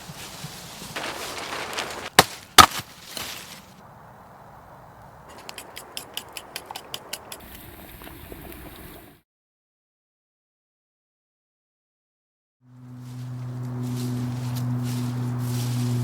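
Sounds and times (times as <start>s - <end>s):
axe chopping wood: 1.8s - 3.0s.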